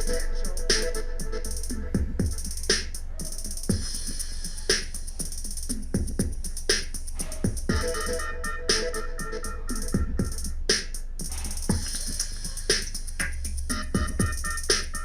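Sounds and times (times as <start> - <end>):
electronic music through speaker: 0.0 - 4.7, 7.2 - 10.7, 11.3 - 15.0
deep bass and kick drums: 0.0 - 15.0
sharp snare-like hit: 4.7 - 4.9, 10.7 - 11.8.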